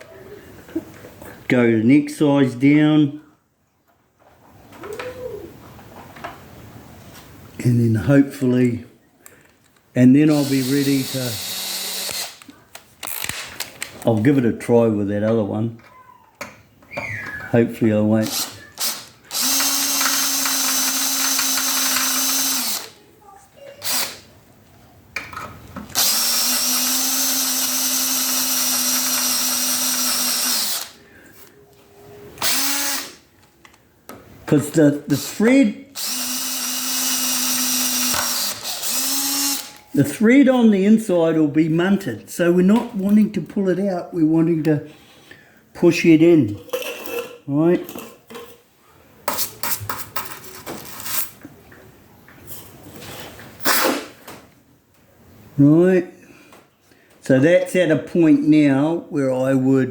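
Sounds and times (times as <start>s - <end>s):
electric drill drilling metal: 10.3s - 12.4s, 18.3s - 23.0s, 23.8s - 24.2s, 25.9s - 31.0s, 32.4s - 33.2s, 36.0s - 39.8s.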